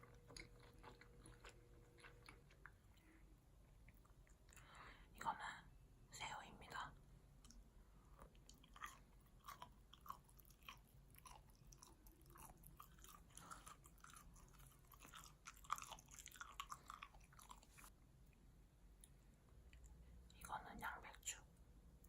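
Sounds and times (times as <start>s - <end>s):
person chewing food: 0.0s - 4.8s, 7.4s - 20.3s.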